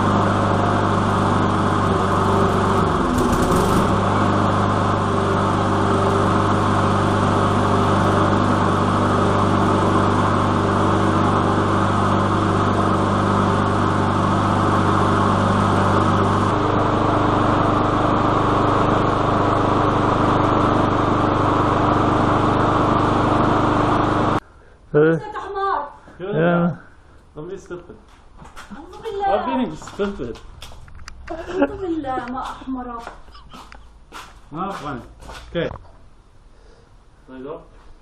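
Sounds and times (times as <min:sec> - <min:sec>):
lawn mower engine running: 0:00.0 - 0:24.4.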